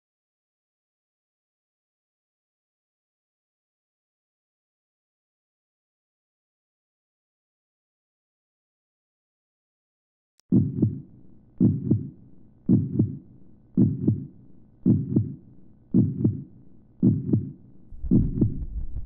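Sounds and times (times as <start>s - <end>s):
heartbeat double thump: 10.5s - 11.0s, 11.6s - 13.2s, 13.8s - 14.3s, 14.9s - 15.4s, 16.0s - 19.0s
low hum: 17.0s - 19.0s.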